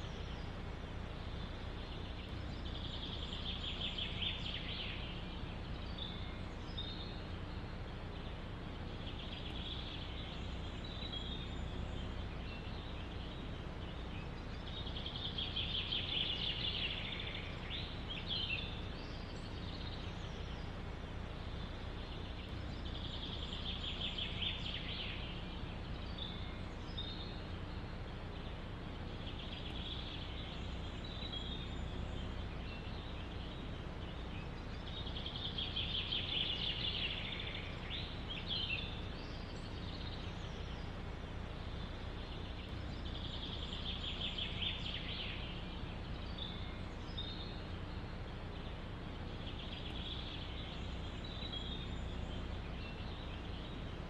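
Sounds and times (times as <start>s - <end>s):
low rumble of wind: 0.0s - 54.0s
songbird trilling: 1.2s - 54.0s.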